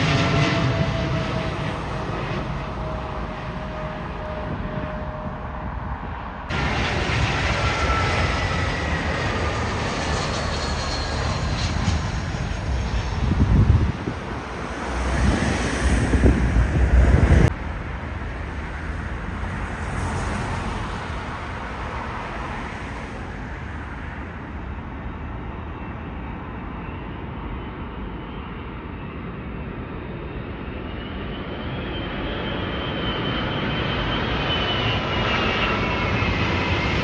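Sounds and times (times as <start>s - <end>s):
heavy low rumble: 0.0s - 19.8s
jet airliner engines passing: 0.0s - 37.0s.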